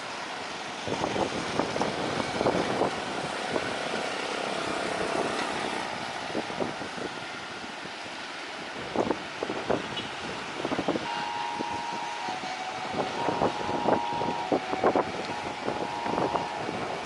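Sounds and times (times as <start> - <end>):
wind buffeting microphone: 0.3 - 17.0
faint steady tones: 11.0 - 17.0.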